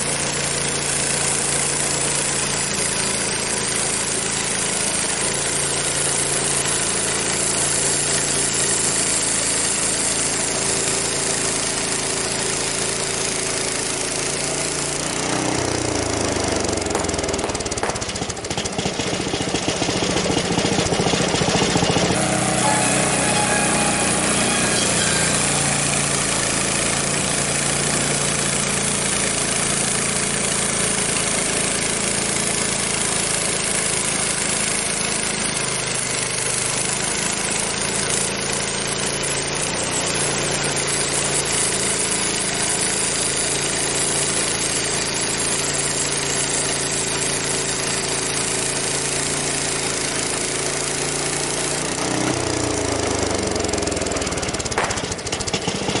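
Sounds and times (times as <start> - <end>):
band blade sawing log: 0.0 - 18.9, 19.5 - 35.1, 50.6 - 56.0
sawmill engine under load: 0.0 - 56.0.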